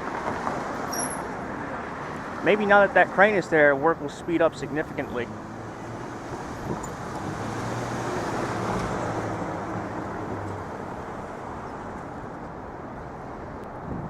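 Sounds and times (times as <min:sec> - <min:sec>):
road traffic noise: 0:00.0 - 0:14.0
vehicle engine humming: 0:03.0 - 0:12.8.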